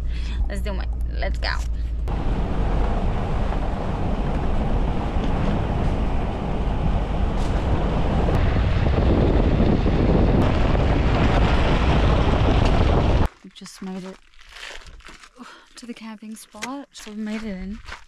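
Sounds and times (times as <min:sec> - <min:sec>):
vehicle engine and road noise: 0:00.0 - 0:14.1
wind buffeting microphone: 0:01.4 - 0:13.3.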